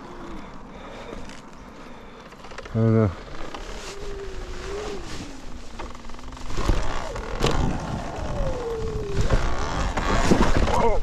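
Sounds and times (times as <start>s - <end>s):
electric dirt bike motor whining: 3.4s - 10.6s
wind noise: 3.6s - 11.0s.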